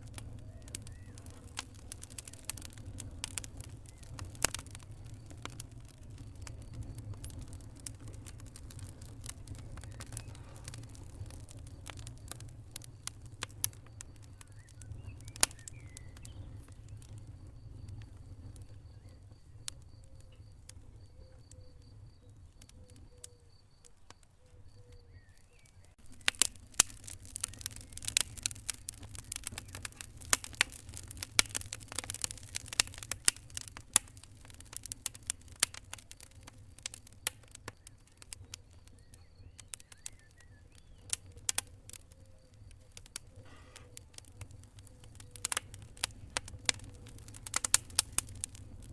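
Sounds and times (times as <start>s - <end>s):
wood fire crackling and popping: 0.0s - 48.9s.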